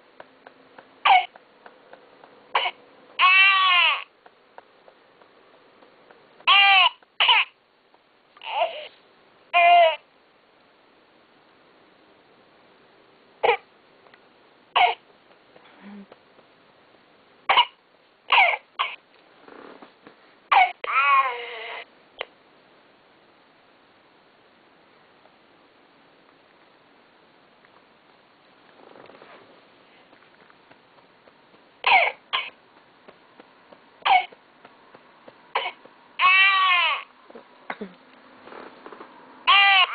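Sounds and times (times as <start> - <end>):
electronic doll coughing: 1.0 - 1.4, 6.5 - 7.6, 31.8 - 32.6, 34.0 - 34.4
doll's recorded cough: 37.7 - 38.0.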